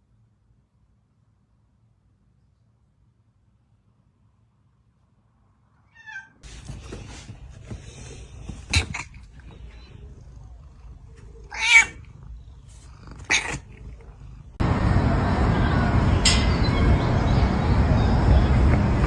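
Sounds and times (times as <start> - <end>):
cat meowing: 5.8 - 6.4, 8.2 - 14.6
steady rushing noise: 14.6 - 19.0.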